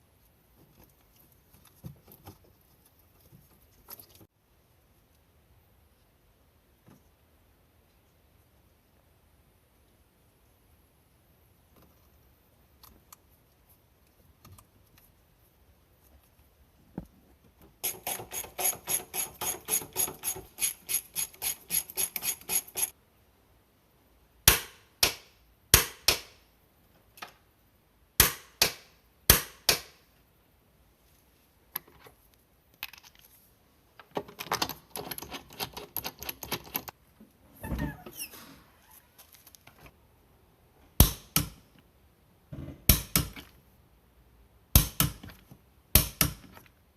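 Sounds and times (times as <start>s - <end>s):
ratchet wrench clicking: 17.8s - 22.9s.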